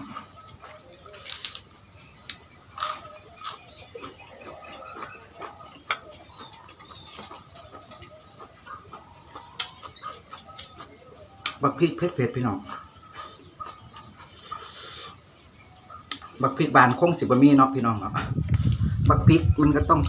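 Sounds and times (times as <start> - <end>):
chickens clucking: 0.0 - 20.0.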